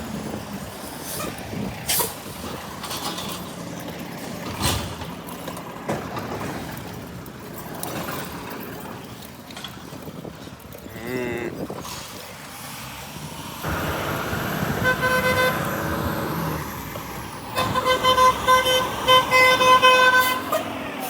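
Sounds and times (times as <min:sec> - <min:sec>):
truck engine running: 0:12.1 - 0:21.0.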